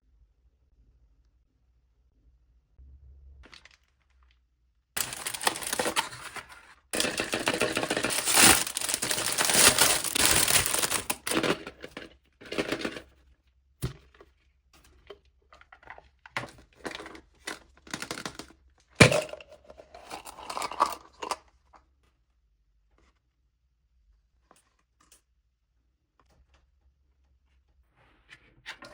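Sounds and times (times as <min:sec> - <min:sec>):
wrapping tearing and crinkling: 0:05.0 - 0:12.0.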